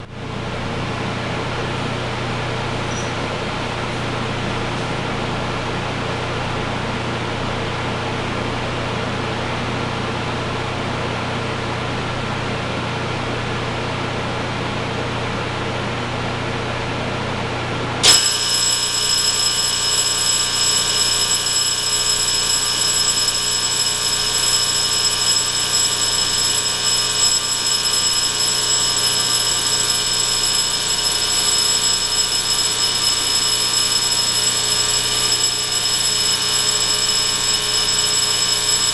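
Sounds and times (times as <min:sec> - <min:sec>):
fire alarm ringing buzz: 0:18.0 - 0:38.9.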